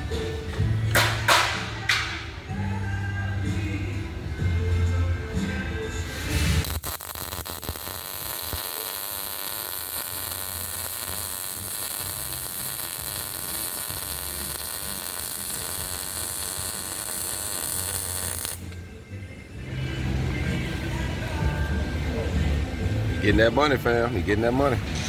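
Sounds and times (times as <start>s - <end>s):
welding arc hissing buzz: 6.0s - 18.7s.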